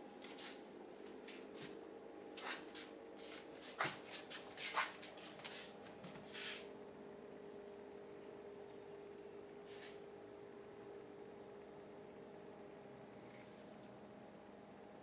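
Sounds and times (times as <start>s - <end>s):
faint steady hum: 0.0s - 15.0s
rustling scrapes: 2.4s - 6.7s.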